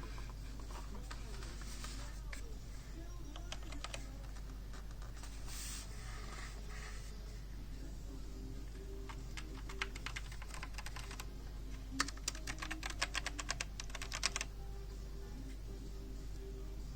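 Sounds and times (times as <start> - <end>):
mechanical keyboard keystrokes: 9.1 - 11.3, 12.0 - 14.5.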